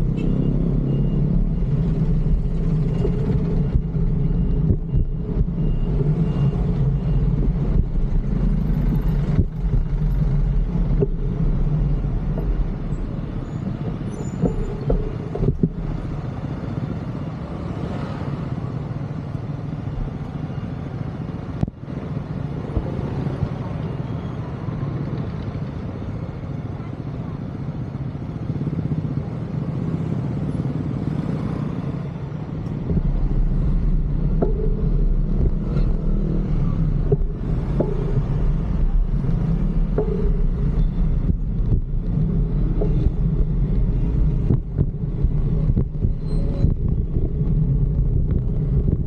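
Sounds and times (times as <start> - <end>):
faint repeated beeping: 0.0 - 17.4, 32.8 - 49.0
road traffic rumble: 0.0 - 49.0.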